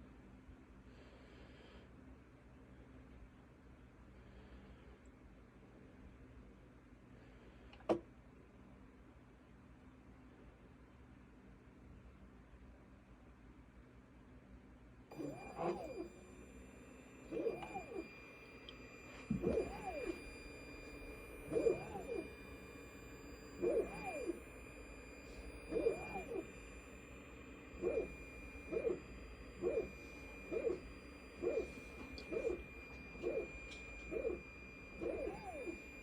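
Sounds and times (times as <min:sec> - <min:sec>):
high-pitched lamp whine: 0:15.1 - 0:36.0
motor whirs: 0:15.1 - 0:36.0.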